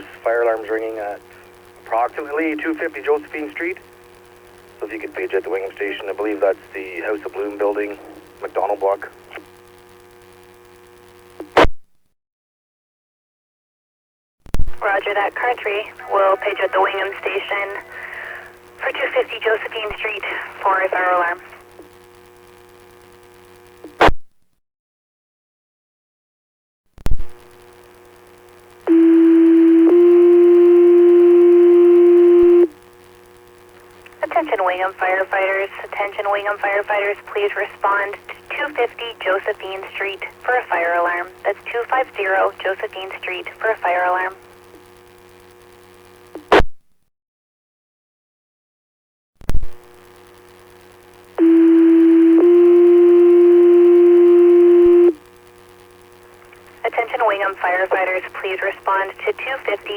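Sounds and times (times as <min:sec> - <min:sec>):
radio static burst: 0:00.0 - 0:09.5, 0:14.6 - 0:21.7, 0:33.6 - 0:44.6, 0:56.0 - 0:59.9.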